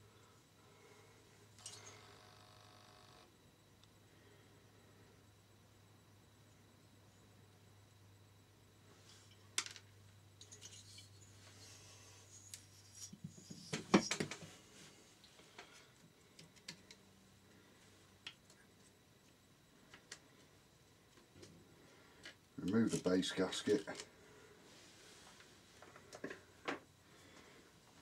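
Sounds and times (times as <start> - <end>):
faint steady hum: 0.0 - 28.0
metal parts and tools clinking: 10.4 - 11.2.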